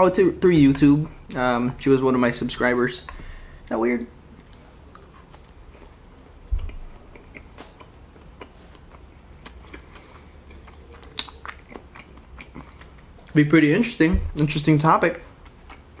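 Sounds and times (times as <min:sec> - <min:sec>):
person chewing: 0:04.4 - 0:13.4, 0:15.1 - 0:16.0
low thump: 0:14.1 - 0:14.5.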